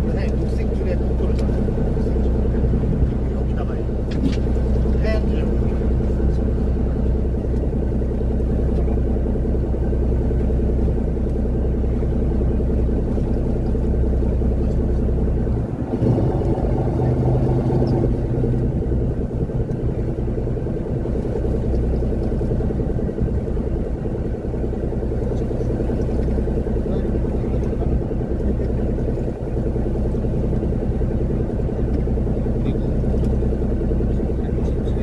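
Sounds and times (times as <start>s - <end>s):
boat engine rumbling: 0.0s - 35.0s.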